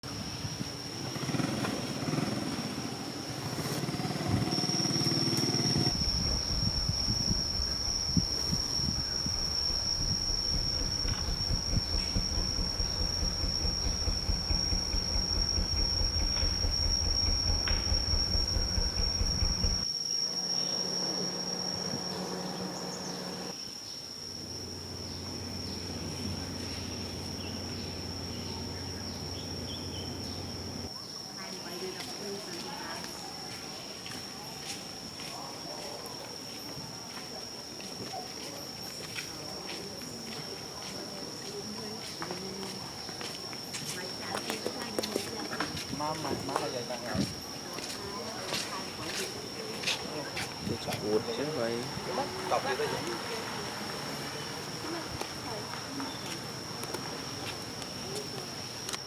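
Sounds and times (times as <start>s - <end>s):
insects droning trill: 0.0s - 59.0s
small engine running: 1.2s - 19.9s, 20.6s - 23.6s
faint low hum: 5.8s - 23.5s.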